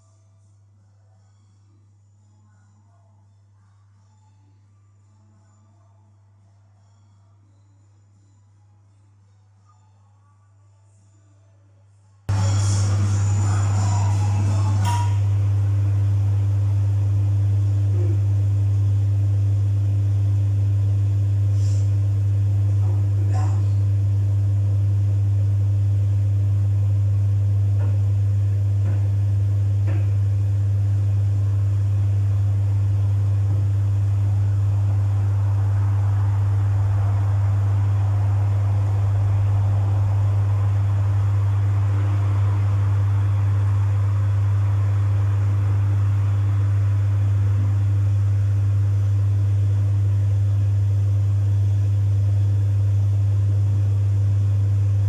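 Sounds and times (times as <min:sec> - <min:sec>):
washing machine humming: 0:12.3 - 0:55.0.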